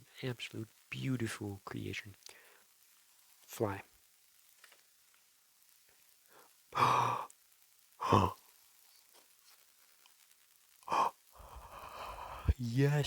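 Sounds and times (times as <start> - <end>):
man sighing loudly: 6.8 - 7.3, 8.0 - 8.4, 10.9 - 12.6.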